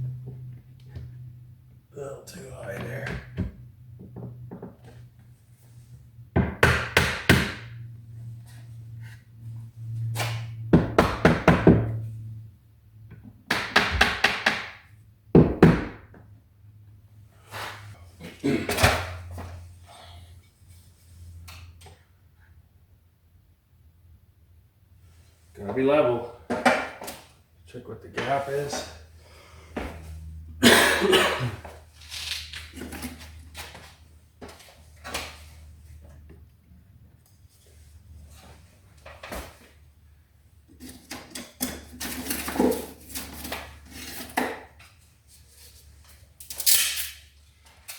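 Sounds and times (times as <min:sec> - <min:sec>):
sharp knocks on wood: 0:06.4 - 0:07.7, 0:13.5 - 0:14.8, 0:15.4 - 0:16.0
wood and tools knocking: 0:13.5 - 0:14.8.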